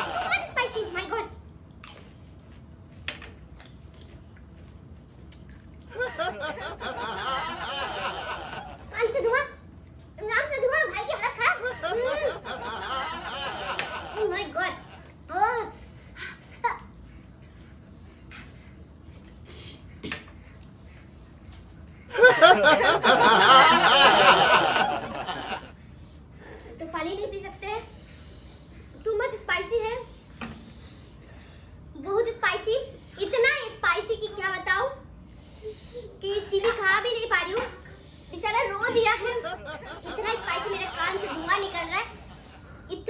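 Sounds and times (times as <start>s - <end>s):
loud laughter: 0.0s - 0.6s, 5.9s - 9.0s, 11.2s - 15.0s, 22.1s - 25.7s, 38.8s - 42.3s
chewing crisp food: 1.4s - 5.9s.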